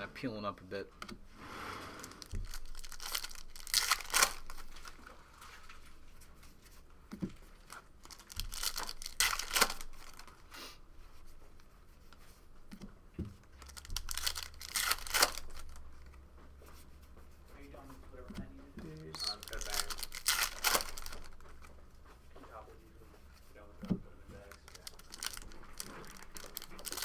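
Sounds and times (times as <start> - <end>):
foil wrappers tearing and crinkling: 2.0 - 5.8, 8.0 - 10.3, 13.6 - 15.8, 19.2 - 21.4, 24.4 - 27.0.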